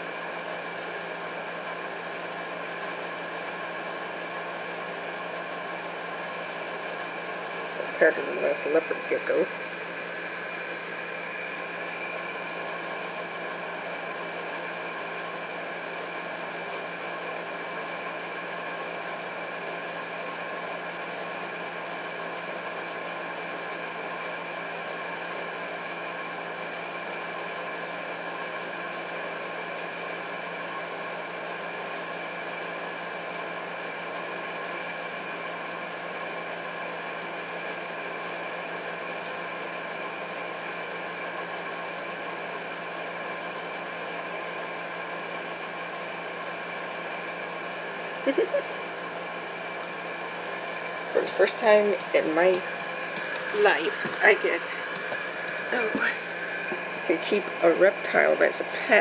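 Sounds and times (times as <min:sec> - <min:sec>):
steady machine hum: 0:00.0 - 0:21.2, 0:44.1 - 0:59.0.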